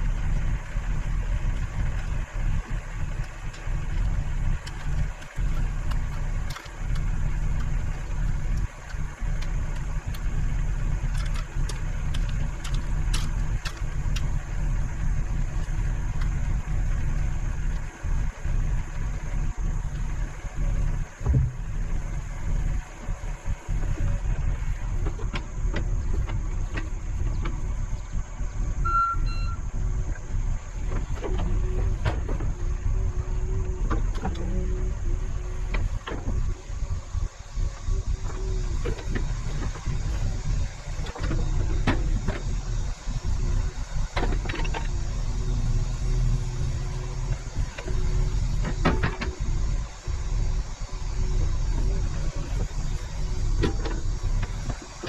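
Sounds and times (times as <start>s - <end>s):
excavator diesel engine running: 0.0s - 55.0s
hydraulic whine: 0.0s - 55.0s
short high beeps: 28.8s - 29.6s.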